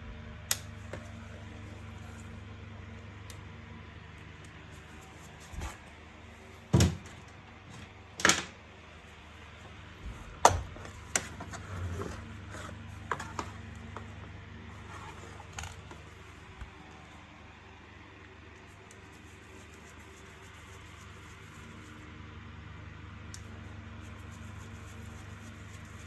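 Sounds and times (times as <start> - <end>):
faint steady hum: 0.0 - 26.0
handling knocks and clicks: 6.7 - 8.6, 10.1 - 14.2.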